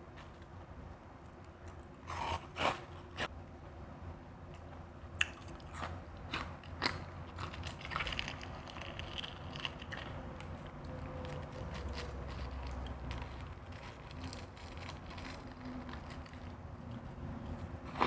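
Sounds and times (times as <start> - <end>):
ice crunching when chewed: 5.2 - 17.0.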